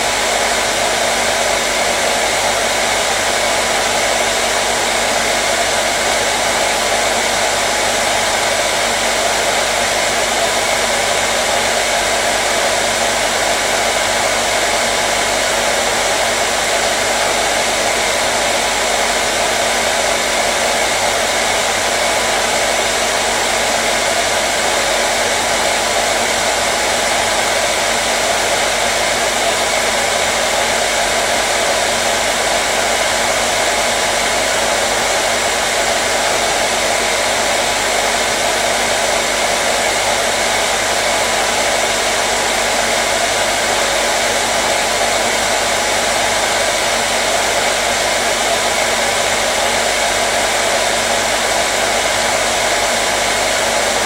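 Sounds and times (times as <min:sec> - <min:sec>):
hair dryer blowing: 0:00.0 - 0:54.0.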